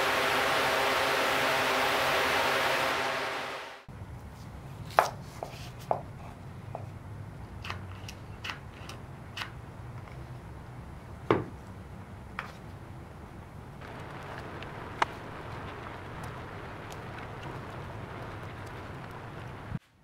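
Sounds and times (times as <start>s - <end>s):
low steady hum: 0.0s - 4.8s, 9.0s - 19.8s.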